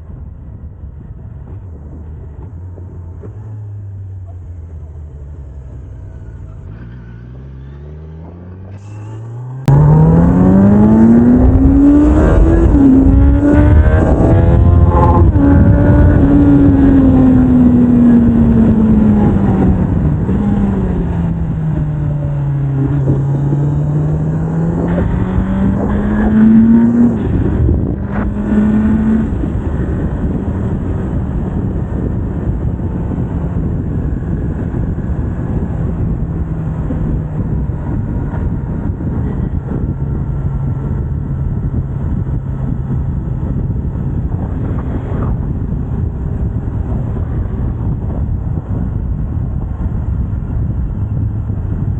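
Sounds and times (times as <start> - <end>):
wind over microphone: 0.0 - 4.8, 5.8 - 51.9
motorcycle engine revving: 2.1 - 51.9.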